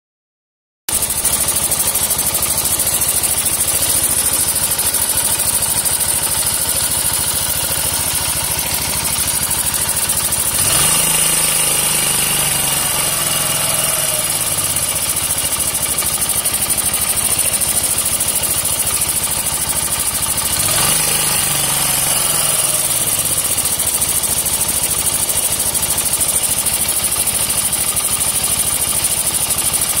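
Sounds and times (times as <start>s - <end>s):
motorcycle engine idling with ticking: 0.9s - 30.0s
engine revving: 1.0s - 24.7s.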